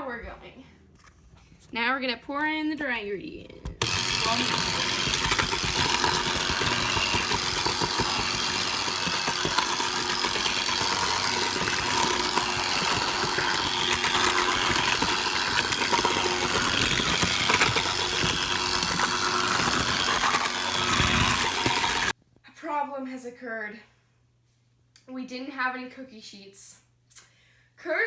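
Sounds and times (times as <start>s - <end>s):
electric mixer running: 3.7s - 22.2s.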